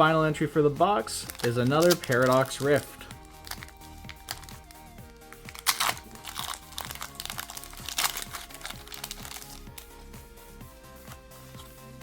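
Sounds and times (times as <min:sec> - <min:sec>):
background music: 0:00.0 - 0:12.0
foil wrapper crinkling: 0:01.2 - 0:09.9.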